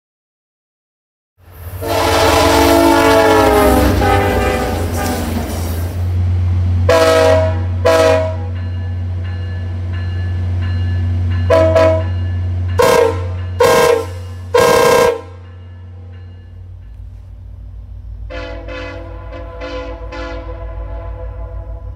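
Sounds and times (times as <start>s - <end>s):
train horn blasts: 1.7s - 5.6s, 6.9s - 8.6s, 11.5s - 12.2s, 12.8s - 16.1s, 18.2s - 21.9s.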